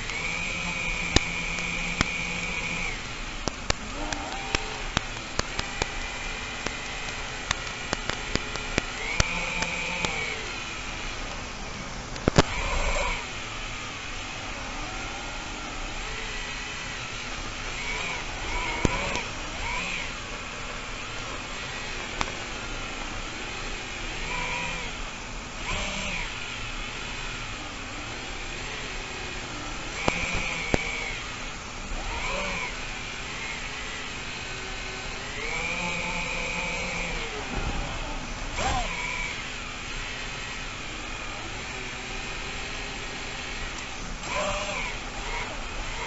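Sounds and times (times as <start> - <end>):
sharp clicks: 0.0 - 13.9, 17.4 - 25.0, 28.1 - 33.8, 35.2 - 40.4
quadcopter motors whirring: 0.0 - 46.0.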